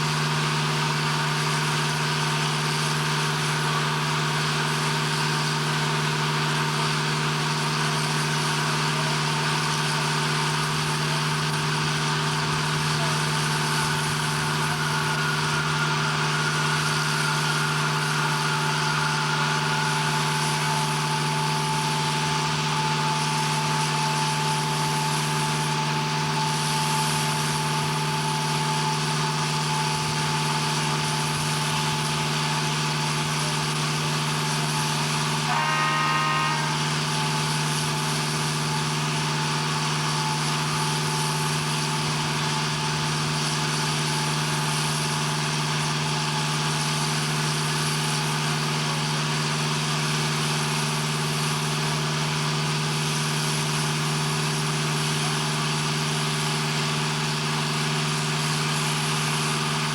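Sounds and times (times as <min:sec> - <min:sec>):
machinery engine drone: 0:00.0 - 0:59.9
short pitched tone: 0:11.7 - 0:33.8, 0:34.4 - 0:41.9.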